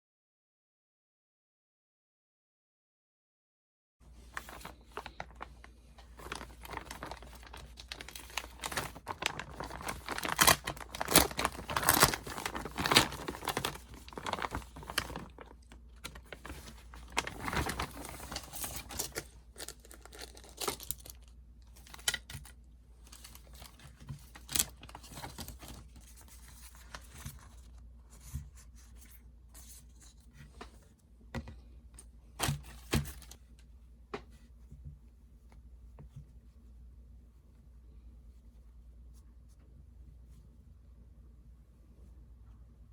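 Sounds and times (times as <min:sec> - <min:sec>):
rustles and clicks of handling: 0:04.0 - 0:40.6
packaging ripping and crinkling: 0:04.3 - 0:22.5.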